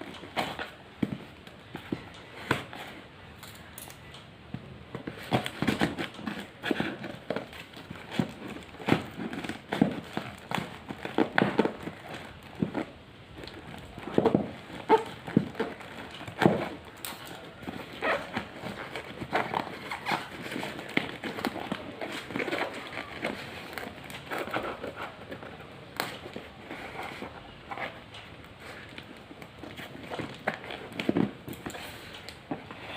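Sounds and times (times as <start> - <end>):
packaging crackling and rustling: 0.0 - 32.8.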